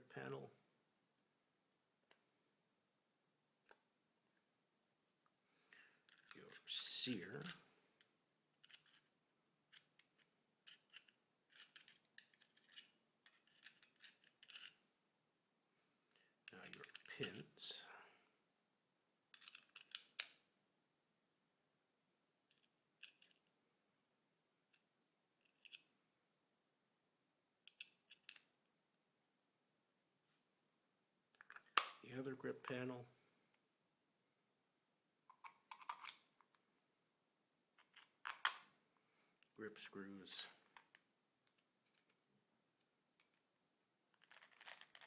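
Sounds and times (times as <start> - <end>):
small steel parts clicking: 8.6 - 9.1, 9.7 - 14.8, 19.3 - 20.4.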